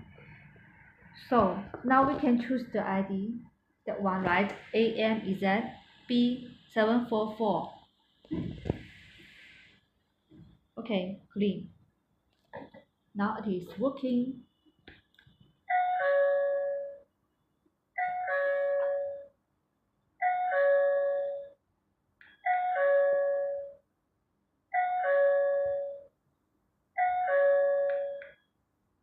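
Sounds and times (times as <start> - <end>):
electronic doorbell chime: 24.8 - 26.1, 27.0 - 28.4.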